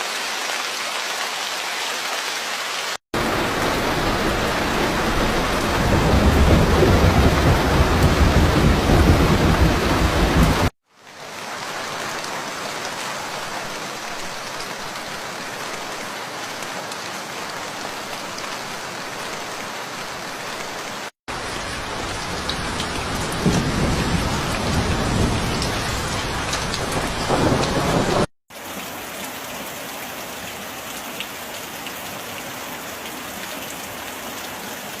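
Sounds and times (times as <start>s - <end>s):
heavy rain: 0.0s - 35.0s
thunder rumbling: 3.2s - 10.7s, 22.1s - 28.3s.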